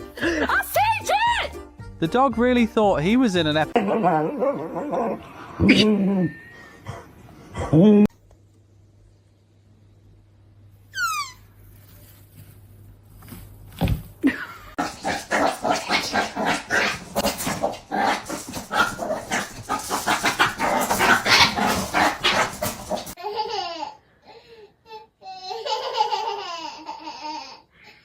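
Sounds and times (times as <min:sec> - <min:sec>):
dog barking and yelping: 0:03.7 - 0:06.0, 0:14.8 - 0:23.2.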